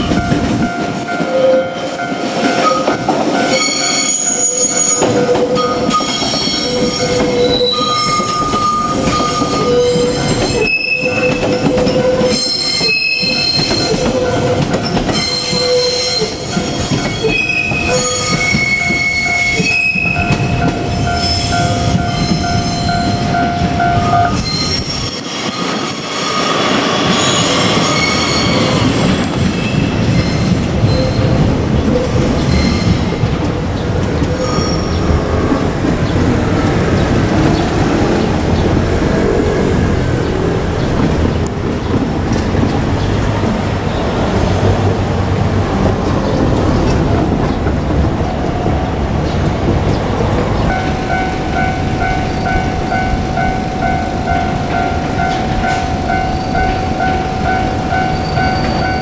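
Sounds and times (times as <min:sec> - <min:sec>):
train running on rails: 0:00.0 - 0:59.0
wheel squeal: 0:03.4 - 0:23.2, 0:24.3 - 0:33.5, 0:34.2 - 0:36.2, 0:50.6 - 0:59.0
steady tone: 0:50.6 - 0:59.0.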